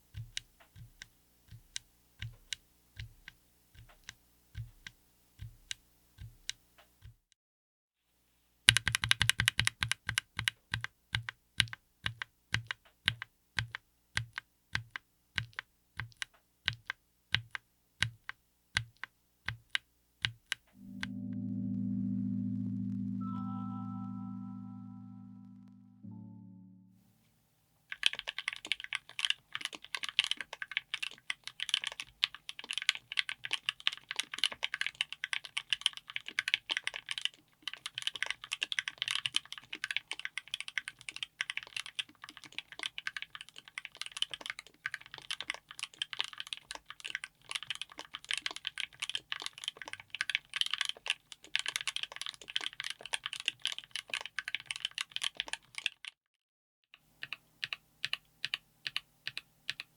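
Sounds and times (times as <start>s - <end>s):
fast mechanical keyboard typing: 8.7s - 20.7s, 27.9s - 56.1s, 57.2s - 59.9s.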